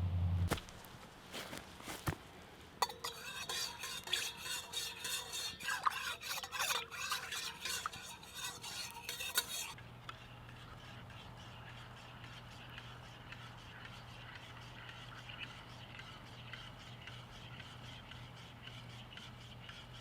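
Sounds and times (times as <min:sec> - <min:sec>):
low hum: 0:00.0 - 0:01.6
spoon stirring in metal pot: 0:02.8 - 0:09.8.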